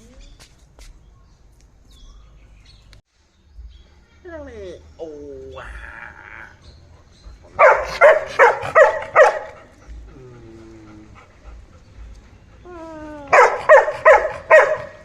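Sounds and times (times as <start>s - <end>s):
dog barking: 7.6s - 9.7s, 13.3s - 15.0s.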